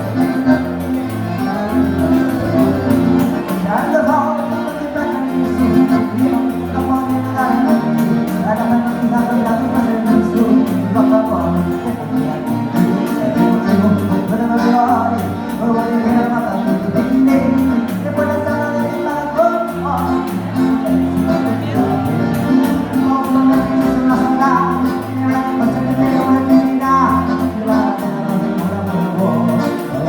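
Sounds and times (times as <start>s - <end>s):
accordion chords: 0.0s - 30.0s
bass line: 0.0s - 30.0s
person singing: 0.0s - 30.0s.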